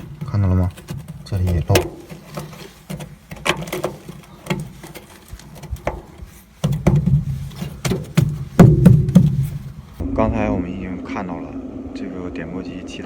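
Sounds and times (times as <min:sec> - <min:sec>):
knocks and clatter on metal boxes: 0:00.0 - 0:10.0.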